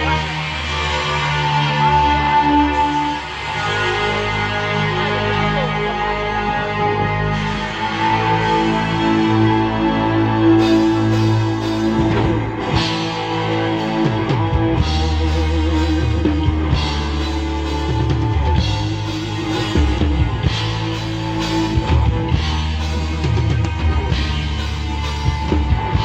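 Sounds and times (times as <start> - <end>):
low bass notes: 0.0 - 26.0
drums and cymbals: 7.5 - 26.0.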